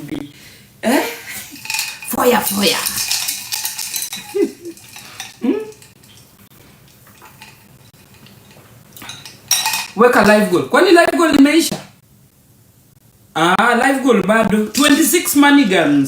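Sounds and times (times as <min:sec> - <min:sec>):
dishes clinking and clattering: 0:01.3 - 0:10.3.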